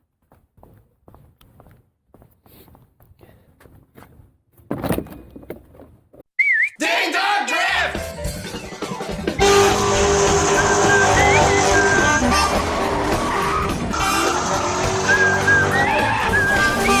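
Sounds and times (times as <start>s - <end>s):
music backing track: 7.9s - 17.0s
warbling whistle-like tone: 9.4s - 17.0s.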